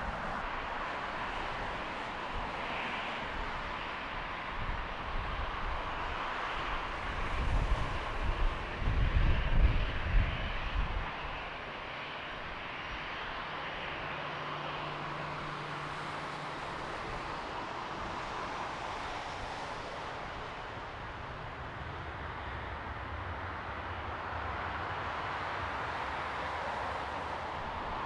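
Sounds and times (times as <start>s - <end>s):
wind buffeting microphone: 0.0s - 11.6s.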